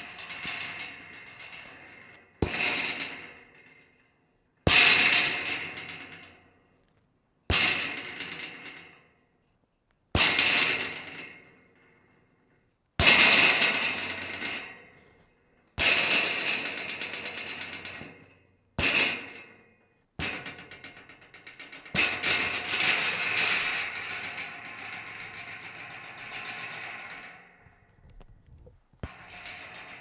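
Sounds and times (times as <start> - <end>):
scrap metal rattling: 20.3 - 30.0.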